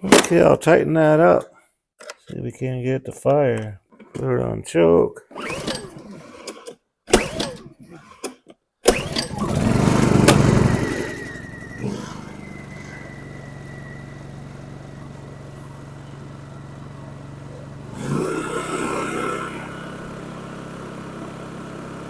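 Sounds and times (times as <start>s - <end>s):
generator pull-started: 5.3s - 22.0s
generator engine running: 8.9s - 22.0s
faint high whine: 10.5s - 18.0s.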